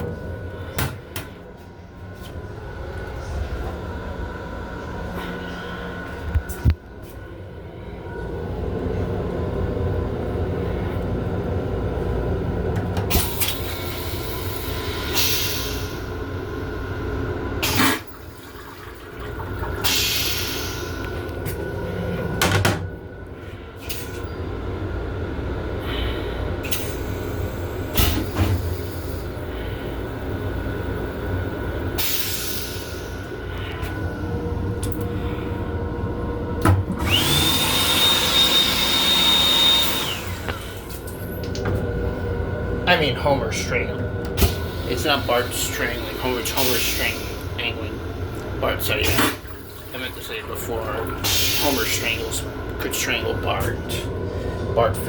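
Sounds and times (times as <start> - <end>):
low hum: 0.0 - 37.3, 40.1 - 55.0
electric railcar rumble: 0.0 - 55.0.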